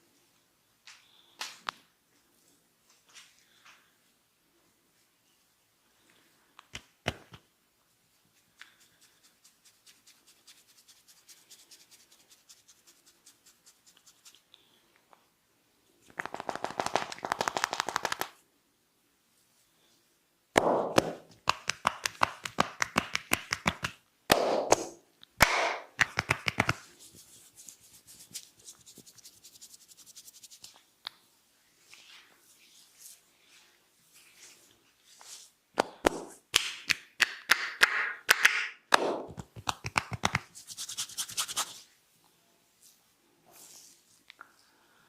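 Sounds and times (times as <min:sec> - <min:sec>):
hands clicking and snapping: 0:06.6 - 0:07.5, 0:16.1 - 0:18.4, 0:20.6 - 0:26.8, 0:35.8 - 0:40.5.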